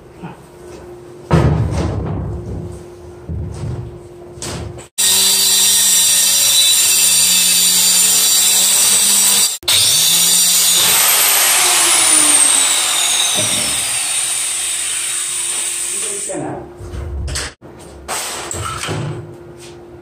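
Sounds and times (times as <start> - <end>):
electric power tool running: 5.0 - 16.3.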